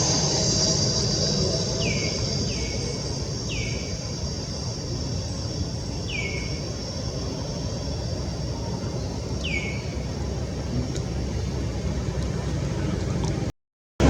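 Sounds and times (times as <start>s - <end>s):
bird downward-sliding call: 0.0s - 4.2s
high insect drone: 0.0s - 11.9s
low rumble: 0.0s - 13.5s.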